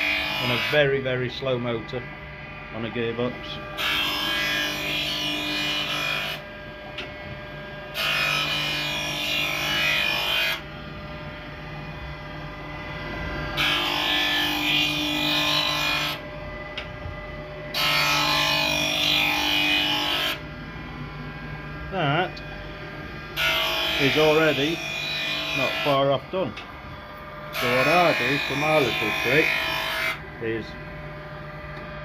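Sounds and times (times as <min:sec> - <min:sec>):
grinding wheel rasping on steel: 0:00.0 - 0:01.6, 0:21.6 - 0:31.0
steady motor hum: 0:00.0 - 0:32.0.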